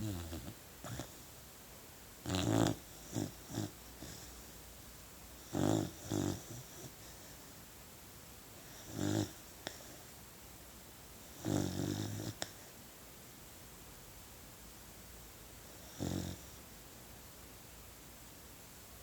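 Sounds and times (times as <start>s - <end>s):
puppy snoring: 0.0s - 1.3s, 2.2s - 4.6s, 5.3s - 7.6s, 8.6s - 10.1s, 11.2s - 12.8s, 15.6s - 16.6s.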